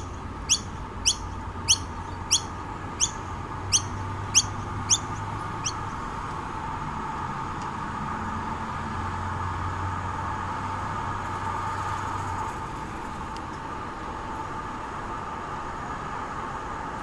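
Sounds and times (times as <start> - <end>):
low background hum: 0.0 - 8.2.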